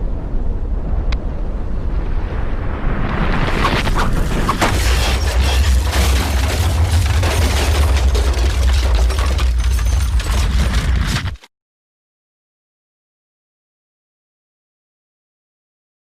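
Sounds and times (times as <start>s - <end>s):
deep continuous rumble: 0.0s - 11.4s
crackle of sharp bangs: 0.0s - 11.5s.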